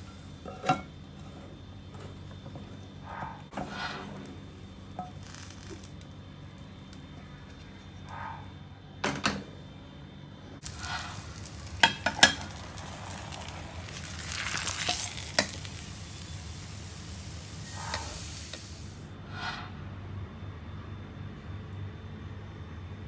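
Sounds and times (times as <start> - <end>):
food sizzling in hot oil: 0.0 - 0.6, 3.6 - 6.0, 10.6 - 19.1.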